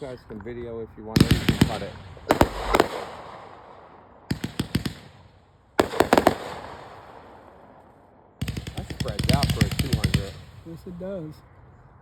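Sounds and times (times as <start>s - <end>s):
firework volleys of sharp bangs: 1.2s - 11.2s.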